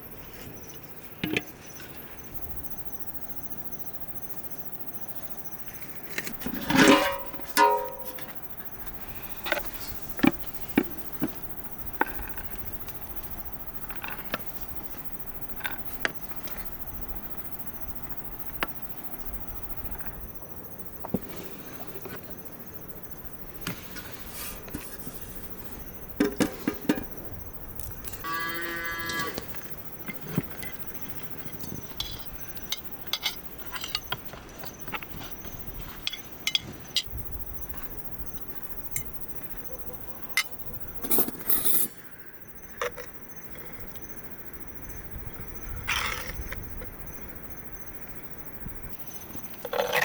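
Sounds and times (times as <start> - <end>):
cow mooing: 28.2 - 29.5.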